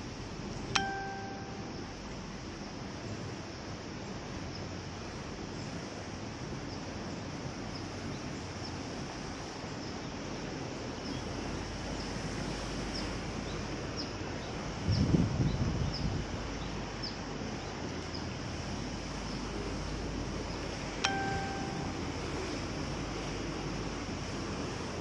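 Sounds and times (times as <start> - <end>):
wind and water rushing: 0.0 - 25.0
faint high chirps: 0.8 - 2.0, 21.0 - 22.6
wind buffeting microphone: 2.1 - 21.0.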